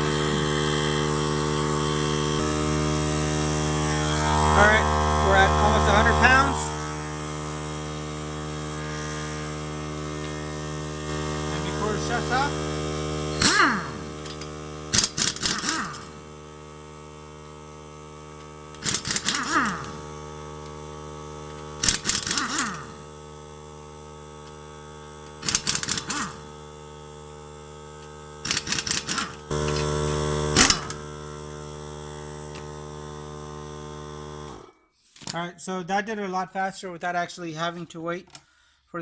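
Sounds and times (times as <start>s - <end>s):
air impact wrench hammering: 0.0s - 16.4s, 18.3s - 20.8s, 21.4s - 23.0s, 25.3s - 26.5s, 28.0s - 31.1s
air compressor motor humming: 0.0s - 34.8s.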